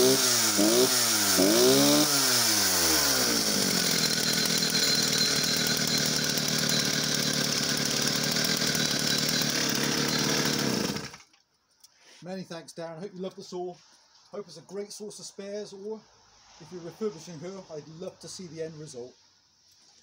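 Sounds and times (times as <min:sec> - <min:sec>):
chainsaw engine revving and idling: 0:00.0 - 0:11.3.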